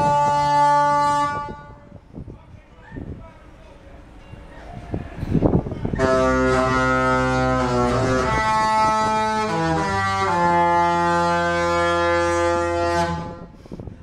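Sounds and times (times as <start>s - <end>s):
ship horns playing deep chords: 0.0s - 2.0s, 6.0s - 13.6s.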